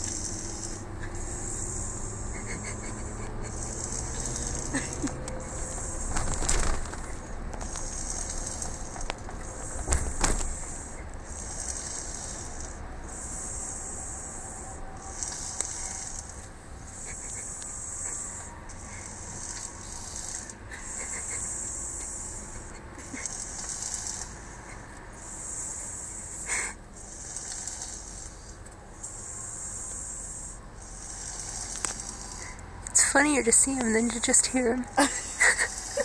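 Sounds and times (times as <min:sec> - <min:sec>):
baby snoring: 0:00.0 - 0:04.8, 0:07.6 - 0:09.0, 0:10.2 - 0:14.3, 0:15.0 - 0:16.4, 0:17.1 - 0:22.4, 0:23.1 - 0:28.6, 0:29.6 - 0:32.6
loud bumps: 0:05.4 - 0:10.9.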